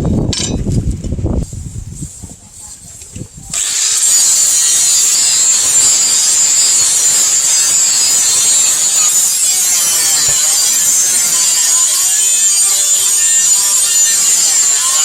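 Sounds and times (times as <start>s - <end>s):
grinder grinding steel: 3.5s - 15.0s.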